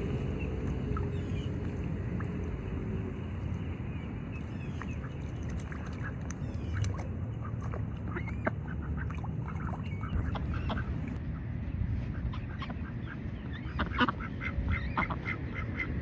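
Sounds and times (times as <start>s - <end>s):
ducks quacking: 4.3s - 11.2s, 12.0s - 16.0s.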